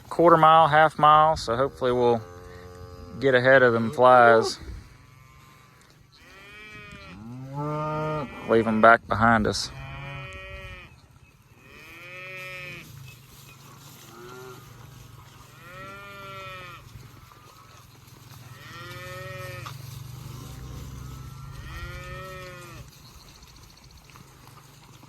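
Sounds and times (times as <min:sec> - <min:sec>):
cattle mooing: 0:01.0 - 0:08.9, 0:14.0 - 0:22.9.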